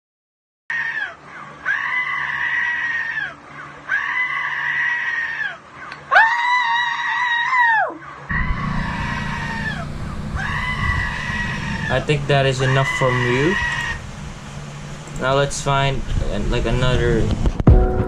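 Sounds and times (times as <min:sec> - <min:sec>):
goat screaming through speaker: 0:00.7 - 0:14.0.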